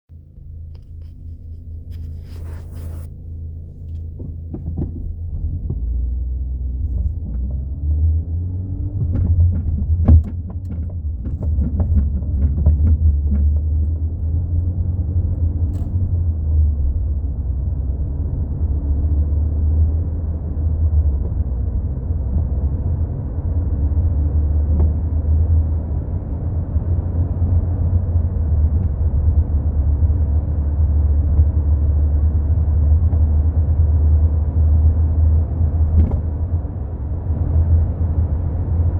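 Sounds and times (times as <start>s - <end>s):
car driving rumble: 0.0s - 38.9s
shock absorber knocking and rattling: 3.8s - 7.7s, 8.9s - 16.4s, 35.8s - 36.4s.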